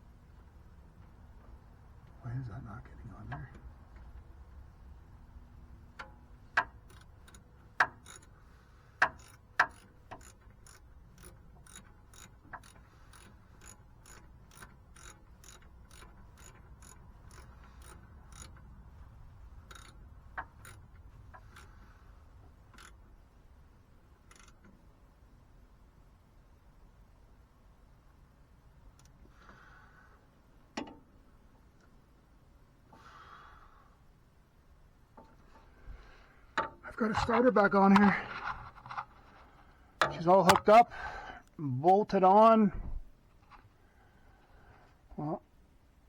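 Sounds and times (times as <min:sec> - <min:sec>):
ratchet wrench clicking: 0:06.0 - 0:08.4, 0:09.0 - 0:21.9, 0:22.5 - 0:23.2, 0:24.2 - 0:24.8.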